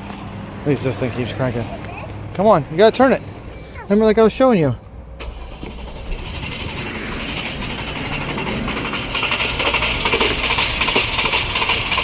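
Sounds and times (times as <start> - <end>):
engine starter cranking: 5.2 - 12.0.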